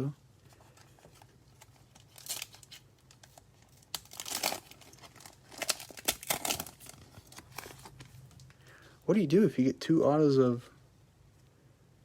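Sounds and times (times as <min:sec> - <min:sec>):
plastic wrapper crinkling and tearing: 0:00.5 - 0:08.6.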